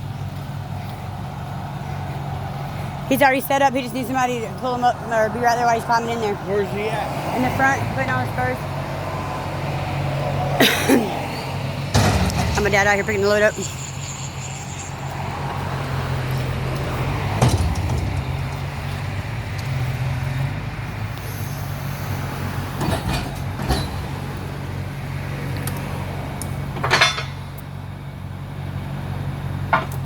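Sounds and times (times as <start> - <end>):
loader engine running: 7.5 - 30.0
sharp metallic clanks: 11.9 - 14.2, 17.3 - 18.7, 26.8 - 27.7.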